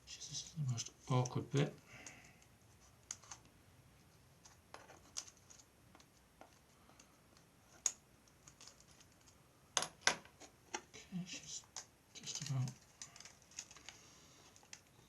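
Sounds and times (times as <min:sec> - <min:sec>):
light clicks and scratches of card: 0:02.0 - 0:09.4, 0:10.4 - 0:14.9.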